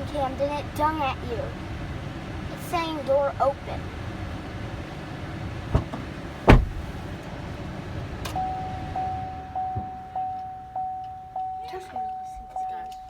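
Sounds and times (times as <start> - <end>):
car door shutting thump: 5.7 - 7.1
door latch clicking: 6.5 - 6.9.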